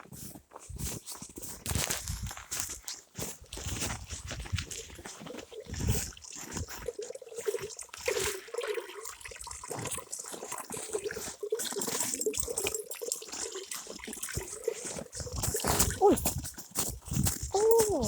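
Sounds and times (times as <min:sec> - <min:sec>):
water trickling and gurgling: 0:02.1 - 0:18.0
small crackles: 0:09.6 - 0:18.0.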